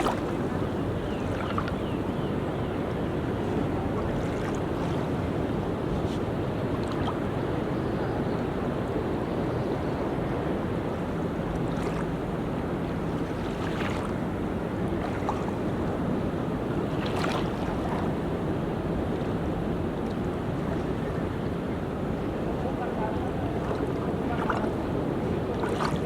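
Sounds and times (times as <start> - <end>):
water splashes: 0.0 - 1.8, 3.4 - 7.3, 11.5 - 18.4, 20.0 - 26.0
ocean waves washing on beach: 0.0 - 26.0.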